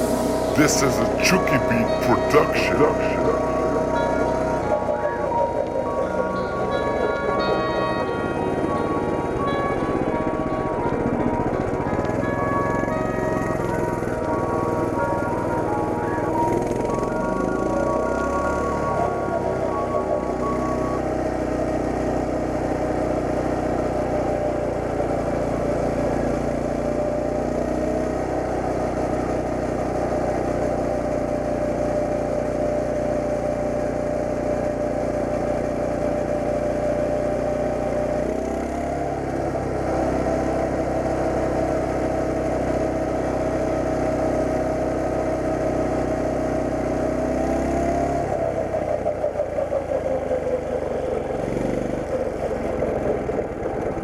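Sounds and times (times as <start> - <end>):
mini bike engine running: 20.2 - 54.0.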